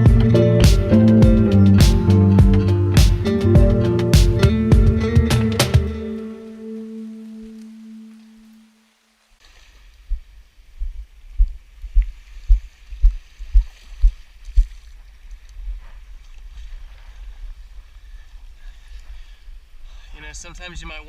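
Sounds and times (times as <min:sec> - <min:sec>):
low thumps: 0:00.0 - 0:06.1
wind rumbling on microphone: 0:09.8 - 0:20.0.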